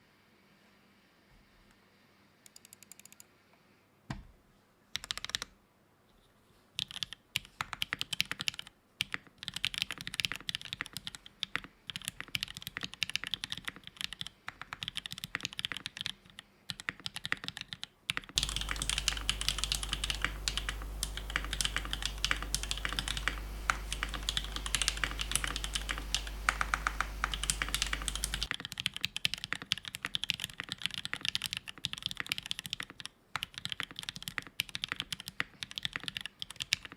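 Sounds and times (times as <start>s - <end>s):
mechanical keyboard typing: 5.0s - 5.5s, 6.8s - 36.9s
low hum: 18.4s - 28.5s.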